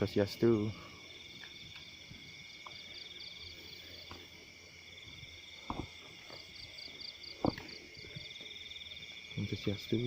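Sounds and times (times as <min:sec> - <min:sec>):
crickets chirping: 0:00.0 - 0:10.0.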